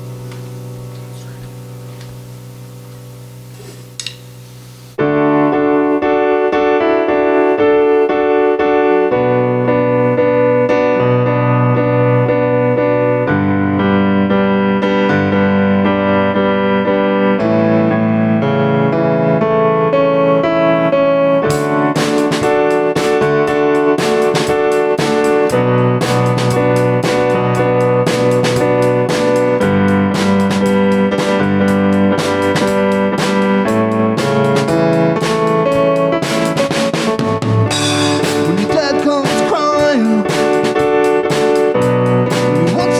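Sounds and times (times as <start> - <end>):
piano chords: 0.0 - 42.9.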